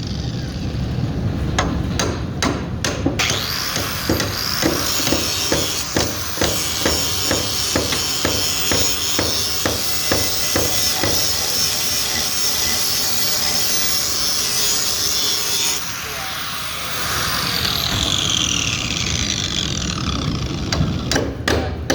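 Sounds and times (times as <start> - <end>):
hammer striking metal: 1.6 - 12.8, 20.7 - 21.9
grinder whining: 3.2 - 21.4.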